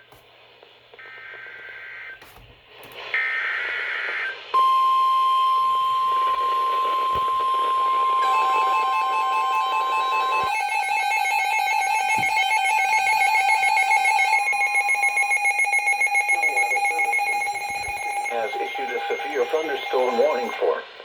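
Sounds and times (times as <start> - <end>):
loud steady alarm tone: 3.2 - 20.9
warbling data tones: 3.2 - 21.0
pulsing beep: 4.6 - 20.6.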